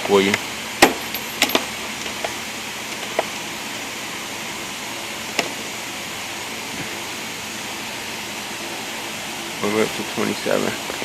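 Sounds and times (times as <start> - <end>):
steady background hiss: 0.0 - 11.0
sockets clinking in a toolbox: 0.8 - 1.7.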